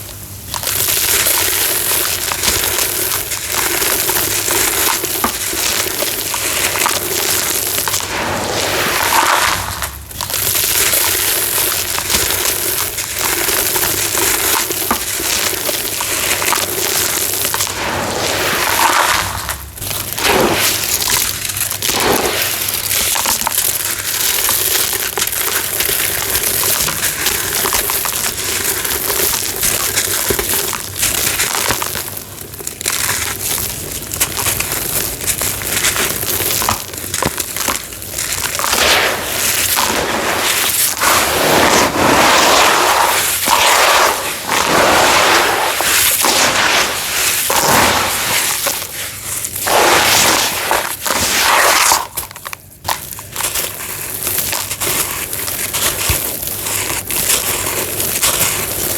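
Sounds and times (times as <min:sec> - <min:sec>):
cement crunching and crumbling: 0:00.0 - 0:58.9.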